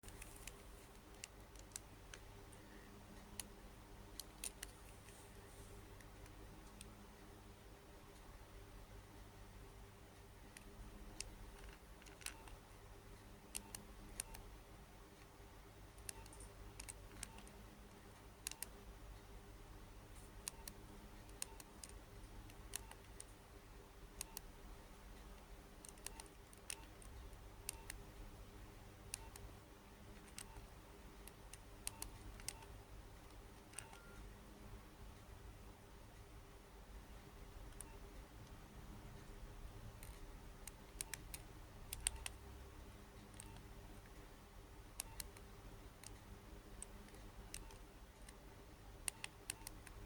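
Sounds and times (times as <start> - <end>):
faint low hum: 0.0 - 50.0
phone keypad buttons clicking: 16.0 - 17.6, 25.8 - 28.0, 30.1 - 30.7, 31.3 - 32.7, 33.7 - 34.2, 40.0 - 42.4, 45.0 - 46.2, 46.8 - 48.4.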